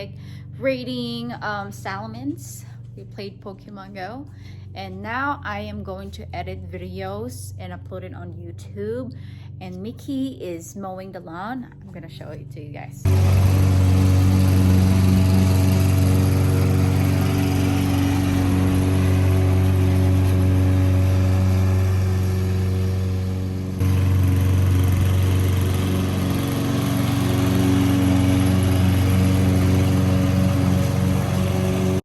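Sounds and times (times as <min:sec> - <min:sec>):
lawn mower engine running: 0:13.0 - 0:32.0.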